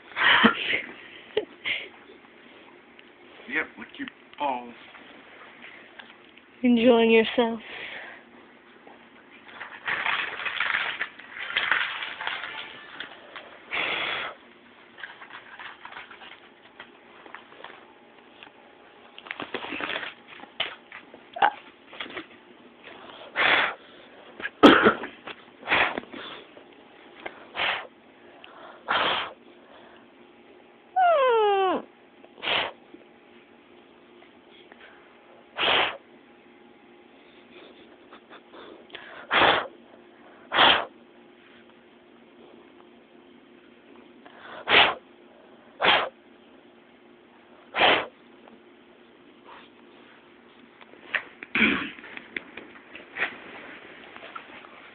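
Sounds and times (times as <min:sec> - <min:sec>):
puppy sneezing: 0:23.4 - 0:23.8, 0:24.4 - 0:26.0, 0:27.5 - 0:27.9, 0:28.9 - 0:29.4, 0:32.4 - 0:32.8, 0:35.6 - 0:36.0, 0:39.3 - 0:39.8, 0:40.5 - 0:41.0, 0:44.6 - 0:45.0, 0:45.8 - 0:46.2, 0:47.7 - 0:48.2.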